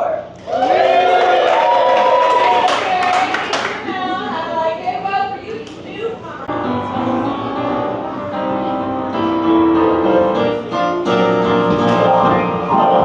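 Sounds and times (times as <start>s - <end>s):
piano music: 6.5s - 13.0s.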